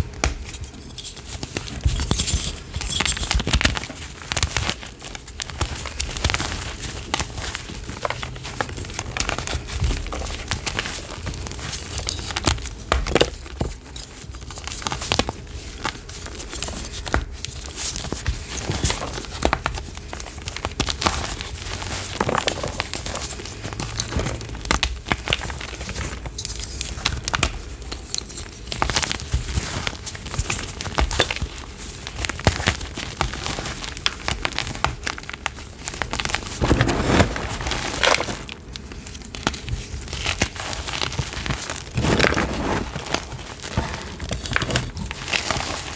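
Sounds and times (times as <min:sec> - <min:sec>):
chalk crunching by hand: 0:41.9 - 0:44.1.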